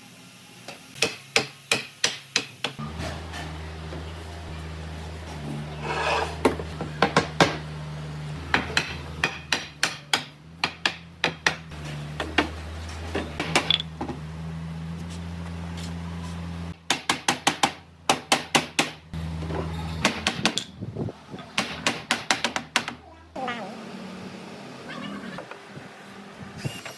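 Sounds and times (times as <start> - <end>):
hammer striking wood: 8.5 - 12.5, 20.0 - 20.7, 21.6 - 23.0.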